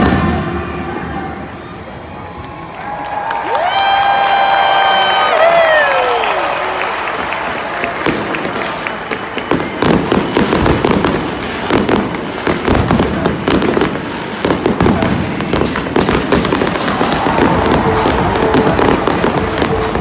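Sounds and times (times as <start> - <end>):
fireworks bangs and crackles: 7.2 - 20.0.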